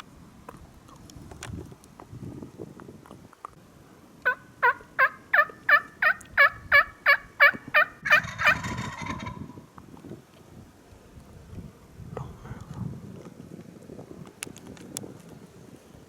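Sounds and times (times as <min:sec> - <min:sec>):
turkey yelps: 0:04.2 - 0:09.4.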